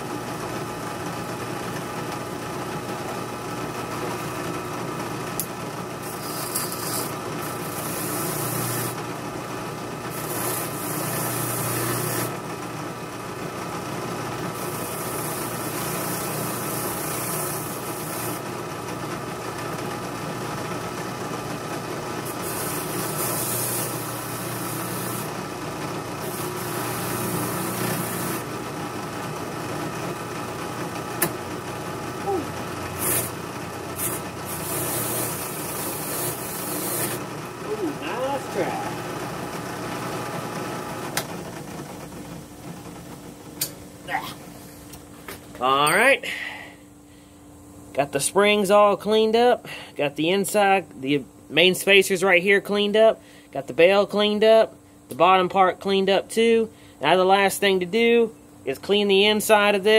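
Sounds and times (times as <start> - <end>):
wire brush disc running: 1.2 - 43.6
metal scrubbing on wire brush: 6.1 - 7.1.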